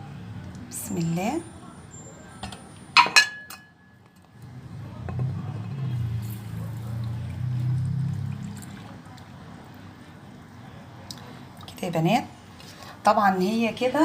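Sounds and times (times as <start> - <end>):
dish clinking: 2.4 - 3.8
milk pouring into a bowl: 6.2 - 10.1.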